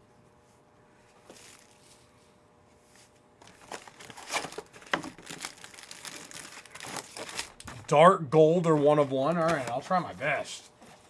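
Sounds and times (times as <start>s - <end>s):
card pack wrappers crinkling: 1.3s - 1.8s, 3.4s - 7.9s, 8.6s - 10.2s.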